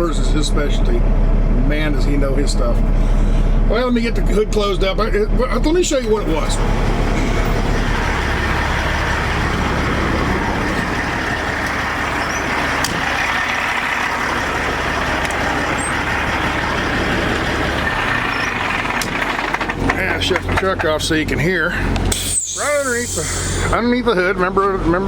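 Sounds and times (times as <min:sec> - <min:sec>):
diesel engine idling: 0:00.0 - 0:25.0.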